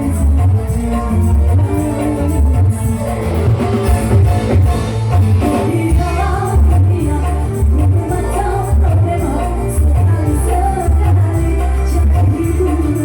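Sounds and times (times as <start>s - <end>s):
heavy pulsing bass and drums: 0.0s - 13.0s
loud live music through pa system: 0.0s - 13.0s
person singing: 5.1s - 13.0s.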